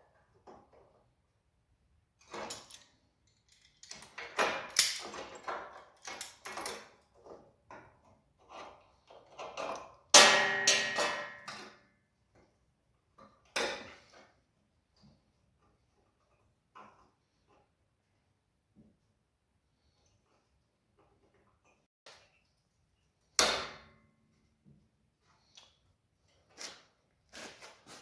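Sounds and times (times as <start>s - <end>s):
metal parts and tools clattering: 2.2s - 7.0s
sharp metallic clang: 10.2s - 11.6s.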